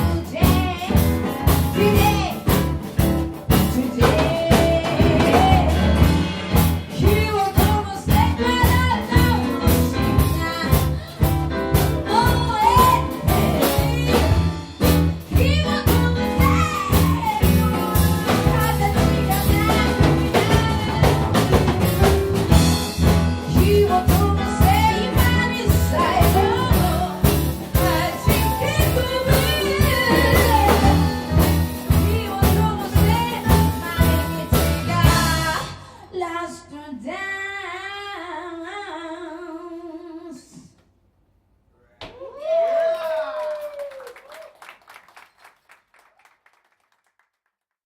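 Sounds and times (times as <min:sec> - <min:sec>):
band music with singing: 0:00.0 - 0:36.0.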